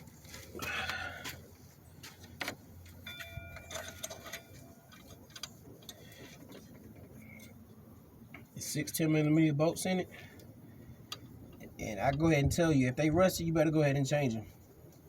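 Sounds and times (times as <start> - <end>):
bolts and hand tools clinking: 2.3 - 6.4
short metallic ring: 3.0 - 4.9.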